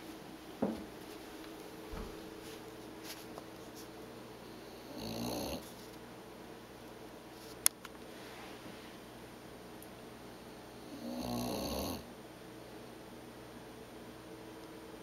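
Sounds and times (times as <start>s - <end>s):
pet snoring: 4.8s - 5.7s, 10.8s - 12.1s.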